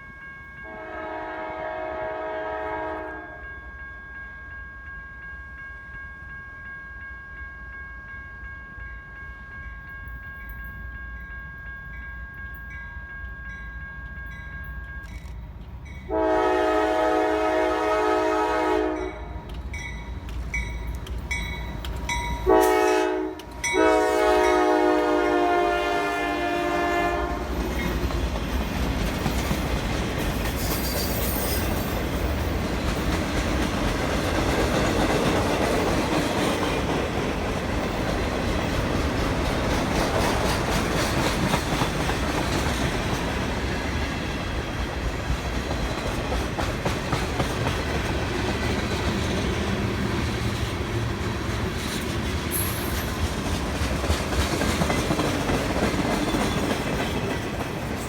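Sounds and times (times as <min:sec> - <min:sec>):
train horn: 0:00.6 - 0:03.8, 0:16.1 - 0:19.5, 0:22.4 - 0:27.6
train rumbling by: 0:09.1 - 0:58.0.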